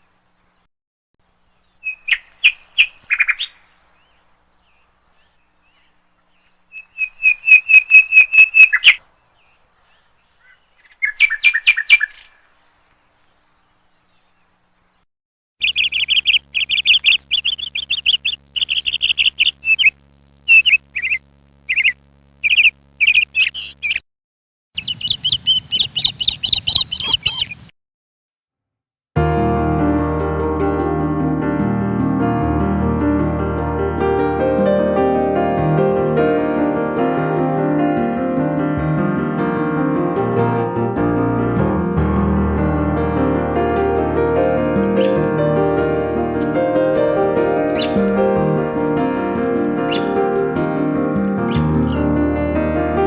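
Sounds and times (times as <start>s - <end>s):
parrots chirping: 15.6s - 24.0s, 24.8s - 27.7s, 43.9s - 53.0s.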